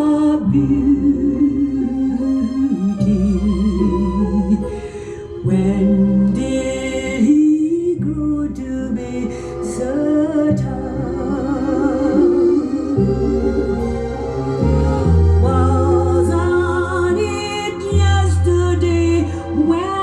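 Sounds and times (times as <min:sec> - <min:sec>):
woman singing a slow ballad: 0:00.0 - 0:14.0, 0:15.4 - 0:20.0
musical accompaniment: 0:00.0 - 0:20.0.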